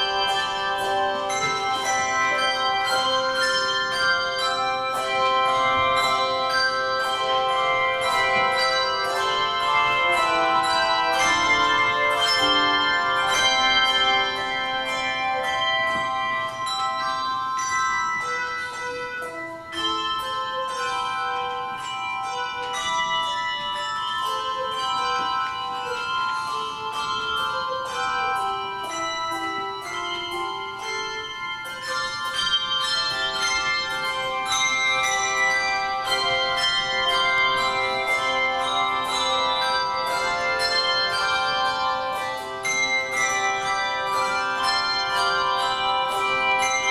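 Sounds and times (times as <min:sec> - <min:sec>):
handbell choir ringing: 0:00.0 - 0:46.9.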